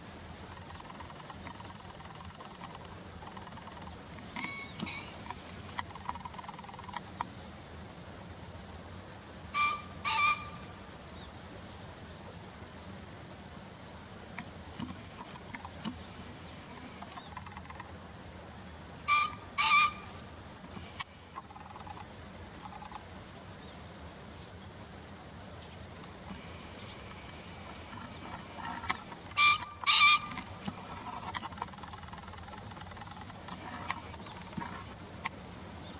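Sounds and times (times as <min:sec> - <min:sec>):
pheasant crowing: 0:00.5 - 0:07.0, 0:09.5 - 0:10.7, 0:14.9 - 0:18.0, 0:19.0 - 0:23.0, 0:26.3 - 0:35.1.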